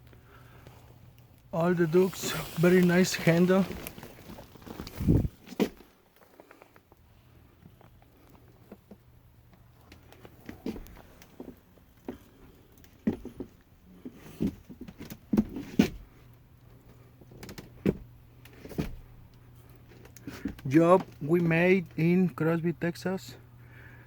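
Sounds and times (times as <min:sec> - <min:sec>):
footsteps on attic boards: 0:13.0 - 0:16.1.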